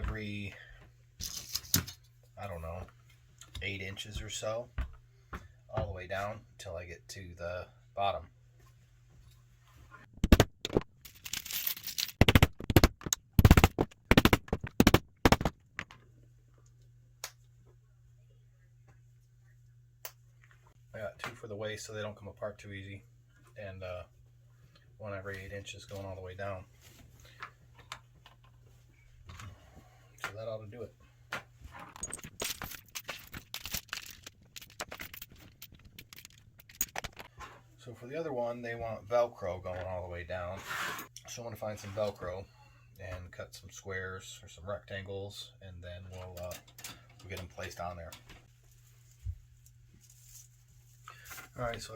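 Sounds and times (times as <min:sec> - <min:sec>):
small parts being handled: 0:01.2 - 0:02.1, 0:10.2 - 0:16.1, 0:31.4 - 0:37.6.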